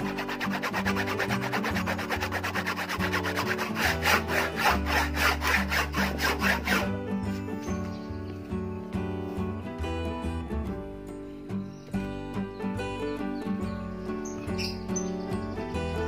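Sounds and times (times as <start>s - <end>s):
metal file rasping on saw teeth: 0.0s - 6.9s
background music: 0.0s - 16.0s.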